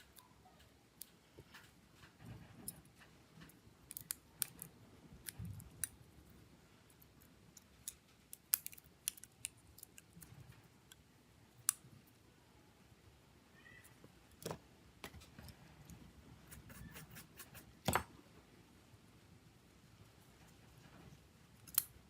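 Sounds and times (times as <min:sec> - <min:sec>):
small tools clicking and tapping: 0:00.0 - 0:06.0.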